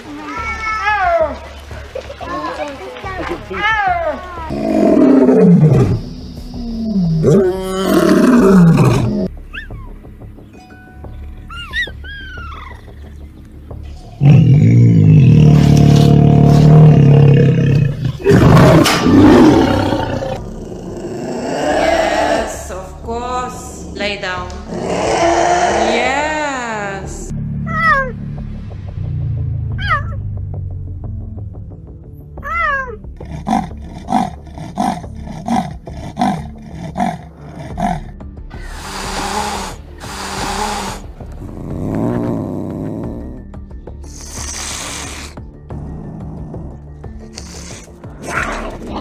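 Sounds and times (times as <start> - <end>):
background music: 0.0 - 49.0
big cat roaring: 4.5 - 9.3, 14.2 - 22.7, 24.6 - 26.4, 32.4 - 49.0
rasping grunts: 4.5 - 9.3, 14.0 - 22.8, 33.1 - 49.0.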